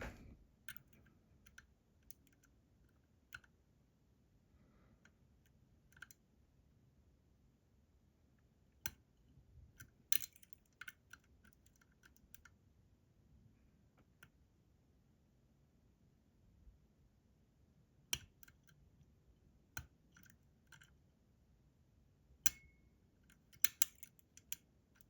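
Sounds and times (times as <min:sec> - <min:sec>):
lock pick clicking on pins: 0:00.6 - 0:03.5, 0:05.4 - 0:06.2, 0:09.8 - 0:12.6, 0:18.2 - 0:18.8, 0:19.8 - 0:21.0, 0:22.5 - 0:25.0.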